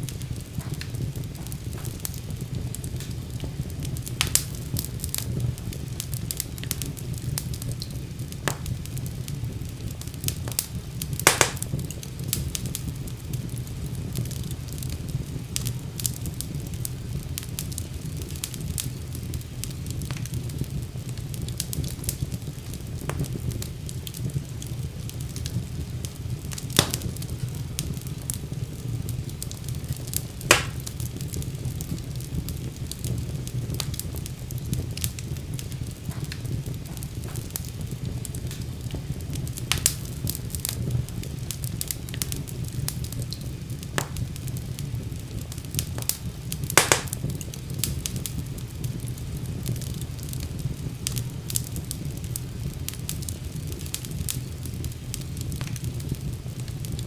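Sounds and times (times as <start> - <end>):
loud fire pops: 0.0 - 57.0
wood fire crackling: 0.0 - 57.0.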